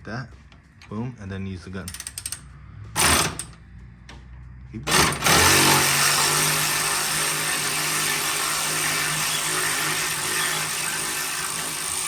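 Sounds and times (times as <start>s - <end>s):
power gun whirring: 3.0s - 3.6s, 4.9s - 12.0s.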